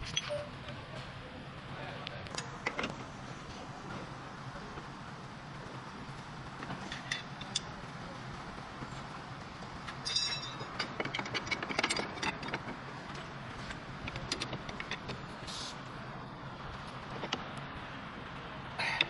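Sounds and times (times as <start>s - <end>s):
steady low hum: 0.0s - 19.0s
metallic clicks and clanks: 6.6s - 7.8s, 9.8s - 15.6s, 16.8s - 17.6s
ringing metal clink: 10.0s - 10.9s.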